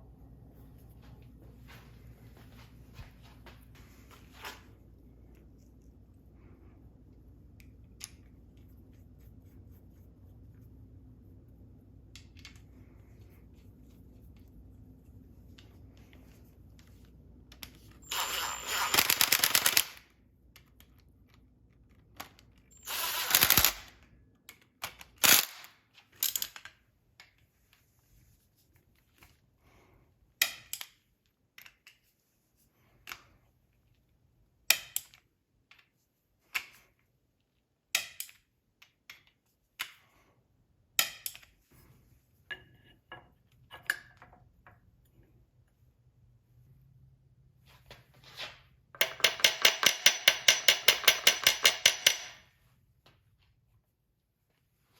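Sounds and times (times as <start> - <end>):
tools knocking metal parts: 48.9 - 52.5.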